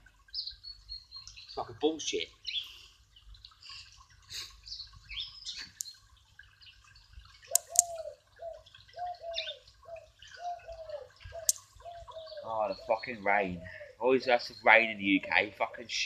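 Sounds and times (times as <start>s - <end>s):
birds chirping: 0.0s - 16.0s
sharp clicks: 7.5s - 7.9s, 11.4s - 11.7s
low falling bird call: 7.5s - 15.4s.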